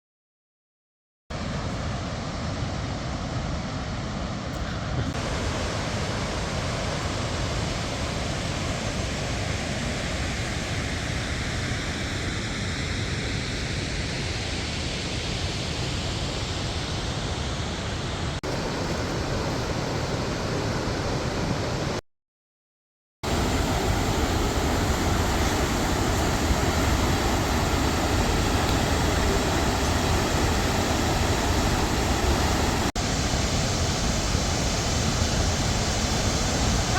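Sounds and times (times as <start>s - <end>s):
waterfall rushing: 5.2s - 12.2s, 18.4s - 22.0s, 23.2s - 36.9s.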